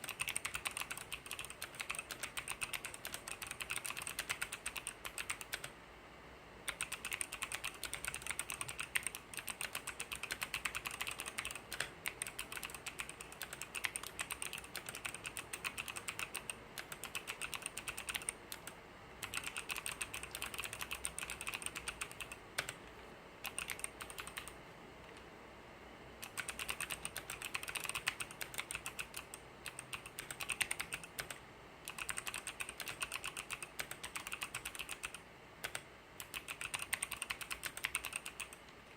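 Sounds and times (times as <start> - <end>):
mechanical keyboard key clacks: 6.7 - 22.8.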